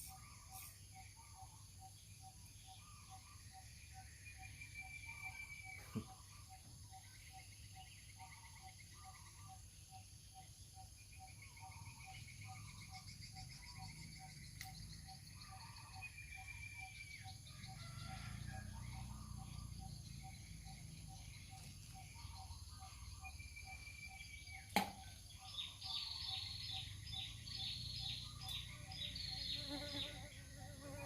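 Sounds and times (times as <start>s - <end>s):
high-pitched insect buzzing: 29.0s - 31.0s.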